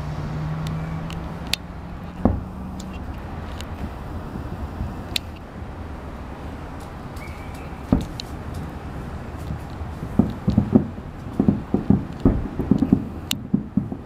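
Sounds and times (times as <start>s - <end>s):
low city background rumble: 0.0s - 14.0s
distant fireworks thumps: 0.6s - 14.0s.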